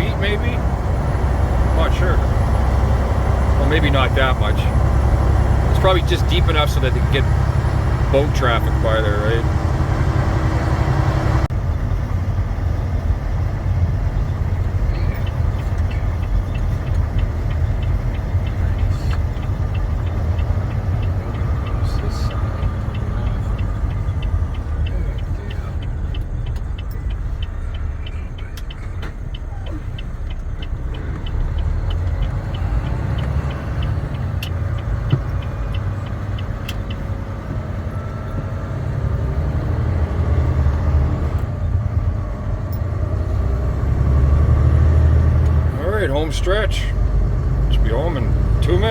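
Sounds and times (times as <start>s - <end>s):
truck engine and road rumble: 0.0s - 48.9s
faint ticking: 14.1s - 44.2s.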